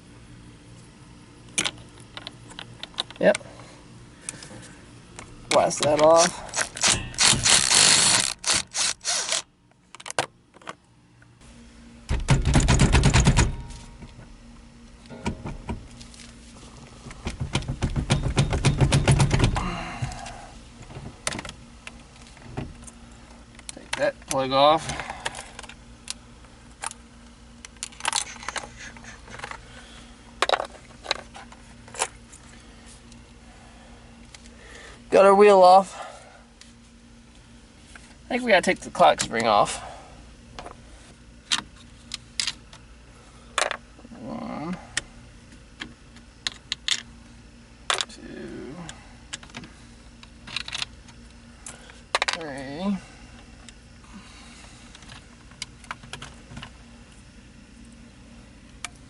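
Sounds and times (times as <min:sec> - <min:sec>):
faint steady hum: 0:00.0 - 0:59.0
impact wrench hammering: 0:06.6 - 0:09.3, 0:12.1 - 0:13.8, 0:17.2 - 0:19.7.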